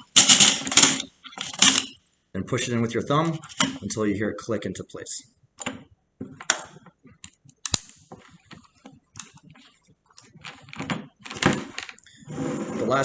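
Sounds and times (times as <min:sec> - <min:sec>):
rifle parts clicking and clattering: 0:00.0 - 0:02.0, 0:03.2 - 0:04.0, 0:05.6 - 0:12.1.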